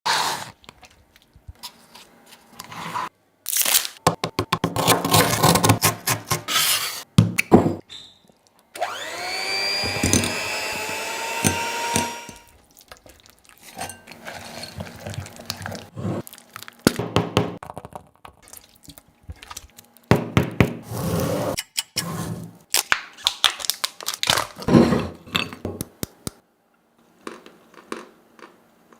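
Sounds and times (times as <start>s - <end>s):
kitchen appliance motor spinning: 8.8s - 12.5s.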